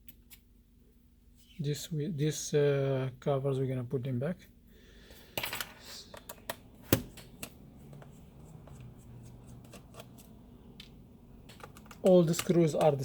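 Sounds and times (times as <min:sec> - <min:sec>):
hands handling plastic laptop parts: 0:05.4 - 0:13.0.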